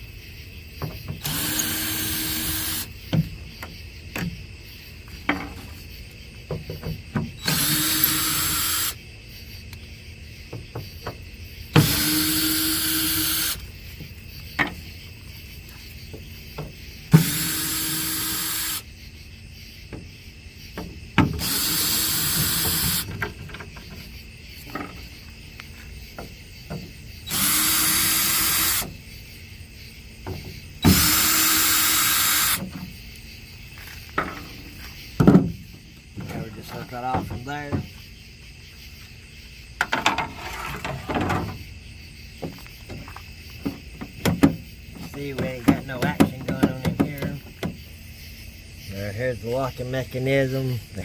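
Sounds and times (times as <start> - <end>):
cordless drill whirring: 1.2 - 2.9, 7.4 - 9.0, 11.8 - 13.6, 17.1 - 18.8, 21.4 - 23.1, 27.3 - 28.9, 30.9 - 32.6.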